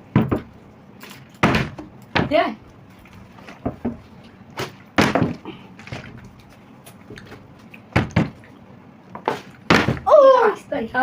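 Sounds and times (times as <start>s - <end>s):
plastic bottle landing hard: 1.4s - 2.4s, 4.6s - 6.2s, 8.0s - 8.4s, 9.2s - 10.1s.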